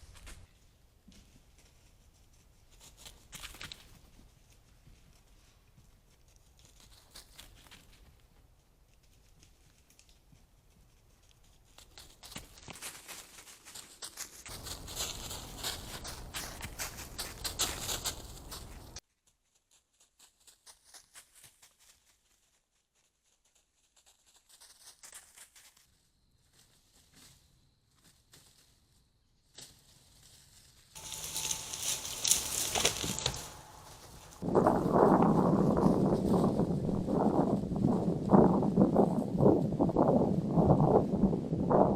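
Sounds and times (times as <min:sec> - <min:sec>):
faint rustling crackles: 0:00.0 - 0:19.1, 0:19.7 - 0:39.3
deer rustling through dry leaves: 0:11.7 - 0:19.0, 0:29.6 - 0:38.2
scuffle in leaves: 0:12.7 - 0:19.0, 0:29.7 - 0:37.8.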